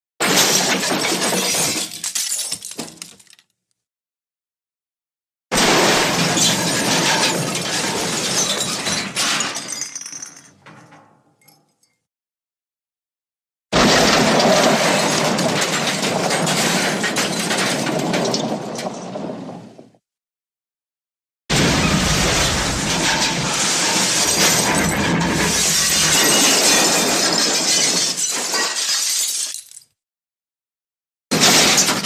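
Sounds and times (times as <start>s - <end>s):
glass shattering crash: 0.2s - 3.4s, 5.5s - 11.5s, 13.8s - 18.5s, 21.5s - 30.0s, 31.3s - 32.0s
debris clinks: 21.6s - 30.0s.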